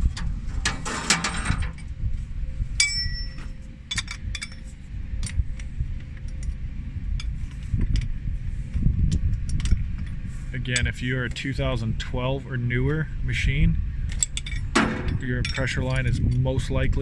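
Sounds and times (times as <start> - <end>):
low rumbling background: 0.0 - 17.0
metal tools clinking: 0.1 - 1.9, 2.8 - 6.6, 14.1 - 16.6.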